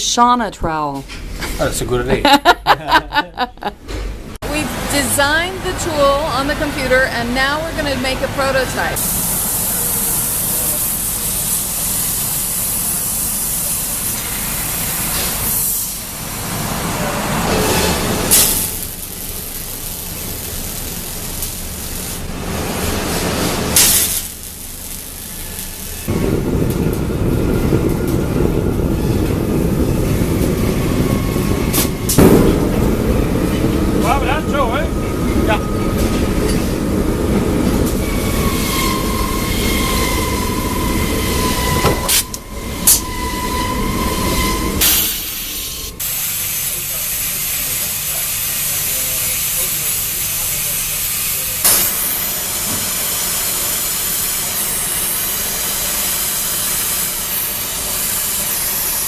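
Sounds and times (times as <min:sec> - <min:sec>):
machinery low rumble: 0:01.0 - 0:15.0, 0:16.0 - 0:46.1
loud air hisses: 0:08.8 - 0:26.4, 0:29.0 - 0:59.0
sharp bangs: 0:26.1 - 0:46.0.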